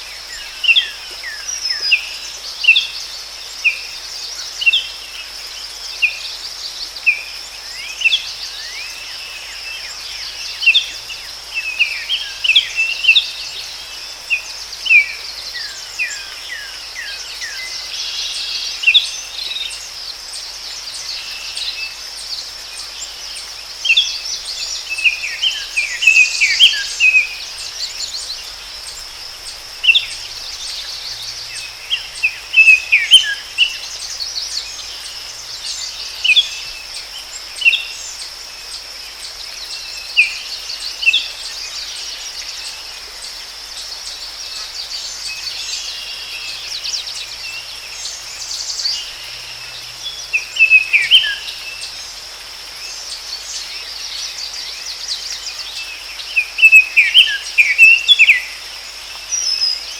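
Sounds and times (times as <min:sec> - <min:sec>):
high insect drone: 0:00.0 - 0:59.9
birds chirping and trilling: 0:23.0 - 0:38.4, 0:39.2 - 0:52.1, 0:52.9 - 0:59.9.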